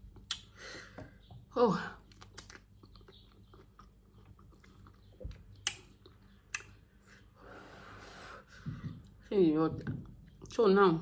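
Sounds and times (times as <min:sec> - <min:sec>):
person chewing: 0:00.1 - 0:00.5, 0:02.0 - 0:07.0.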